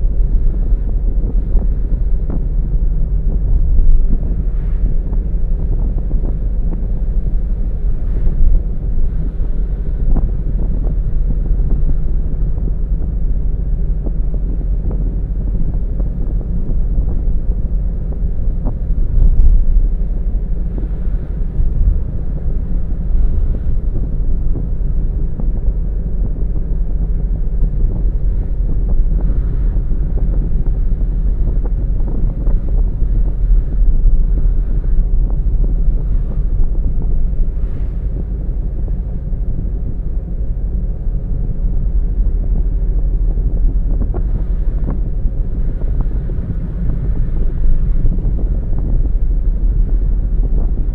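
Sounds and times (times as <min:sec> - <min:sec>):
car engine and road noise: 0:00.0 - 0:50.9.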